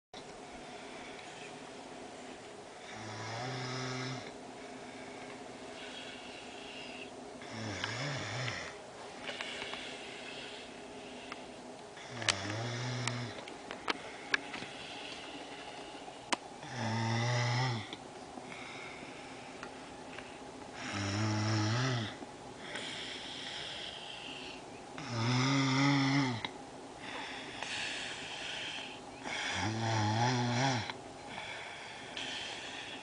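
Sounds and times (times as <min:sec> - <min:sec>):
man snoring: 0:02.8 - 0:04.3, 0:05.8 - 0:08.8, 0:12.0 - 0:13.4, 0:16.6 - 0:18.0, 0:20.8 - 0:24.2, 0:25.0 - 0:26.5, 0:27.7 - 0:33.0.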